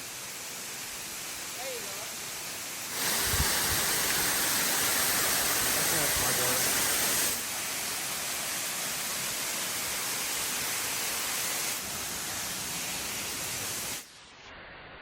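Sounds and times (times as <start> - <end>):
dull hiss: 0.0 - 14.3
waterfall roaring: 2.9 - 7.5.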